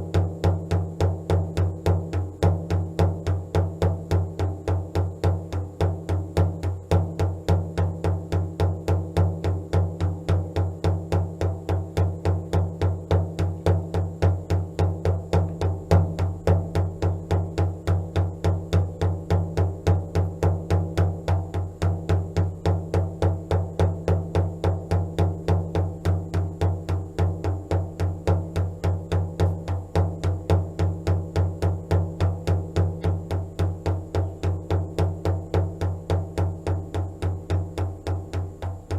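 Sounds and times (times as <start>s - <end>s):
steady drumbeat: 0.0s - 38.9s.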